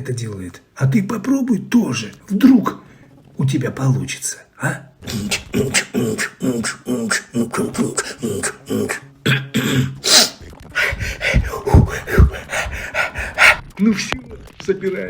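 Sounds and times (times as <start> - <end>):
person beatboxing: 5.0 - 13.8.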